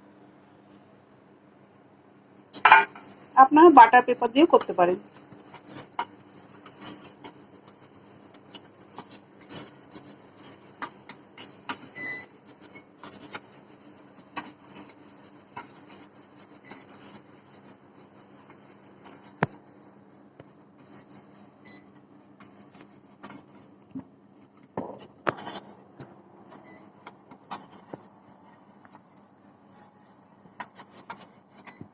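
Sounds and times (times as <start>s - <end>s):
hand rubbing inside cake tin: 2.6s - 21.6s.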